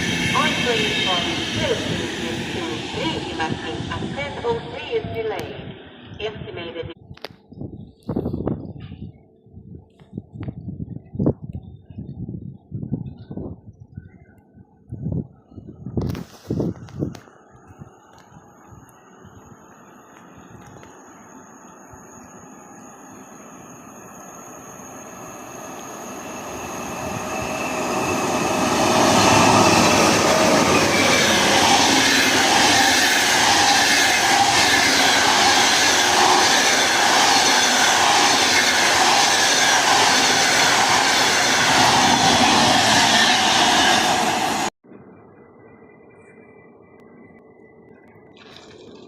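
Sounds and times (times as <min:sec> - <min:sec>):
train wheels on rail: 0:00.0 - 0:05.5, 0:18.0 - 0:44.7.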